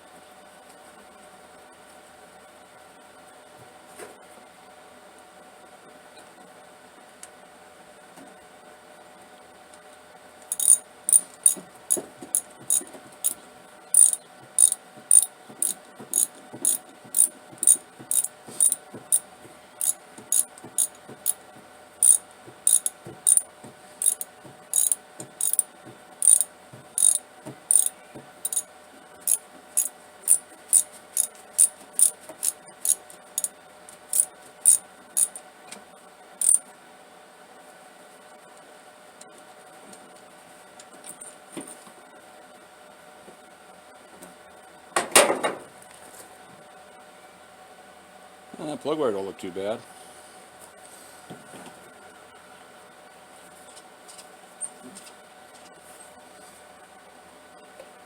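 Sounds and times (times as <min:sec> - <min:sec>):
ratchet wrench clicking: 0:10.5 - 0:13.4, 0:14.0 - 0:19.2, 0:19.8 - 0:21.4, 0:22.0 - 0:23.4, 0:24.0 - 0:28.6, 0:29.2 - 0:35.4.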